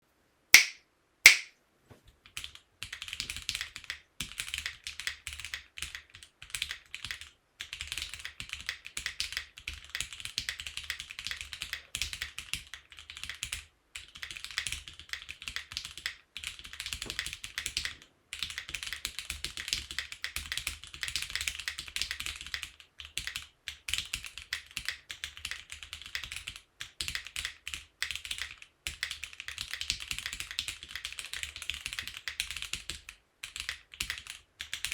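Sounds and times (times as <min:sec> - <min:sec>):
loud sharp snap: 0:00.6 - 0:01.6
mechanical keyboard typing: 0:02.3 - 0:34.9.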